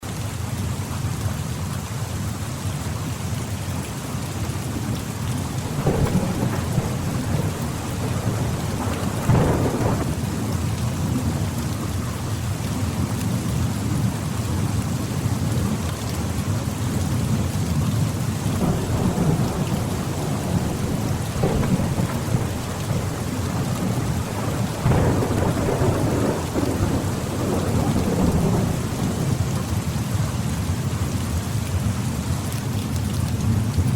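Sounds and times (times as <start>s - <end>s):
steady rainfall: 0.0s - 33.9s
thunder rumbling: 4.7s - 13.0s, 18.4s - 30.0s.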